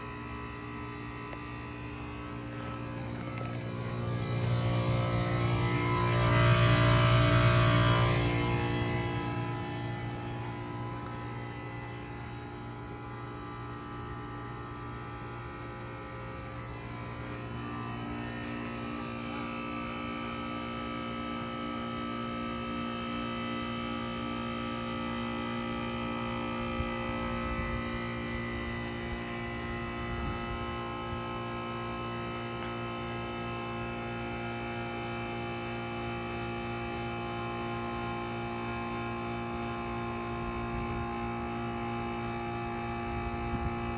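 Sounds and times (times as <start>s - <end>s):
heat pump humming: 0.0s - 43.9s.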